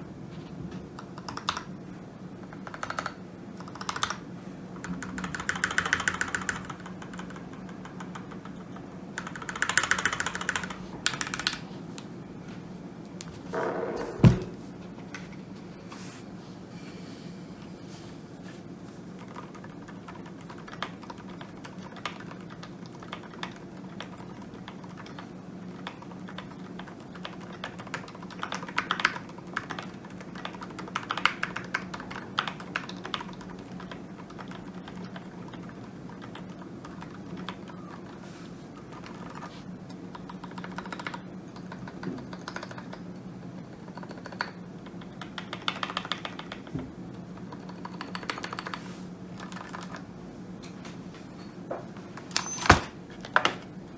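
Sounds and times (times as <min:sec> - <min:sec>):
low background hum: 0:00.0 - 0:53.9
mechanical keyboard typing: 0:01.0 - 0:01.7, 0:02.4 - 0:11.6, 0:19.2 - 0:38.0, 0:40.2 - 0:43.0, 0:43.8 - 0:46.7, 0:47.5 - 0:48.8.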